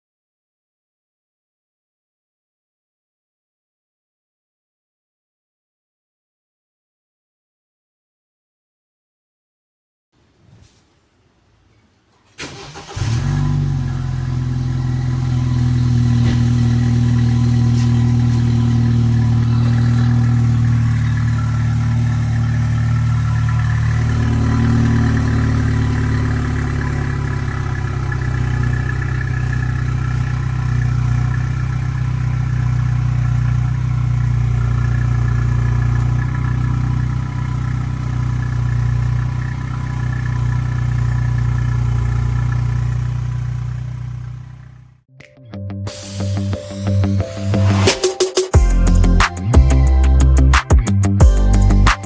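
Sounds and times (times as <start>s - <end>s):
car engine idling: 12.4s - 45.0s, 47.3s - 52.0s.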